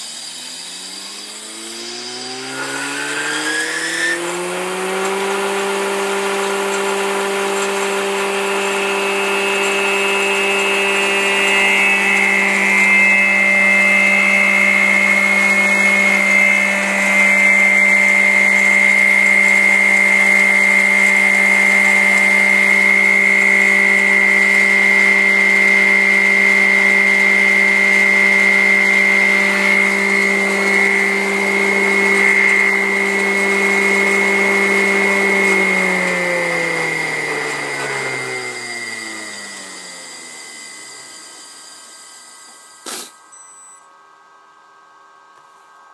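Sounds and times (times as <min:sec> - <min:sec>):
woodworking machine hum and whine: 0:00.0 - 0:45.9.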